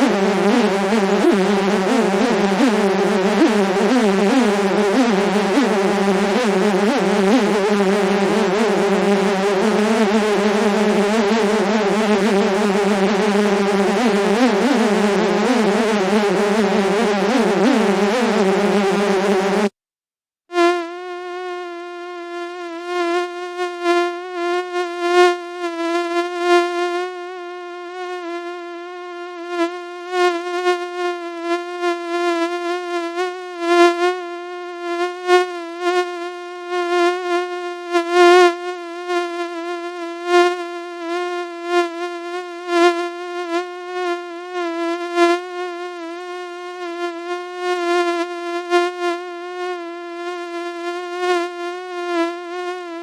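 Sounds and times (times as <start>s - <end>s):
buzzing whine: 0.0s - 19.7s.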